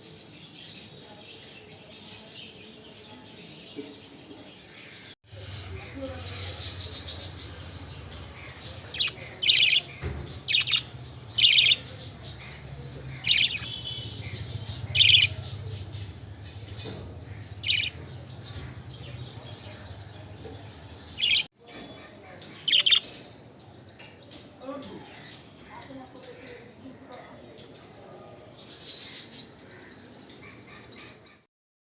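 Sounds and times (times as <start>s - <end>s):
budgerigars chirping: 5.8s - 21.5s, 22.6s - 23.2s.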